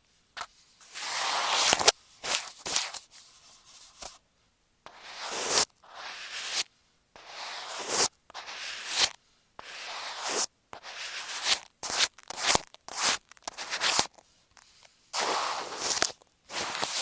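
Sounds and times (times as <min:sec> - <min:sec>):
scratching on tape over microphone: 0:05.0 - 0:06.6, 0:07.3 - 0:14.2, 0:15.2 - 0:17.0.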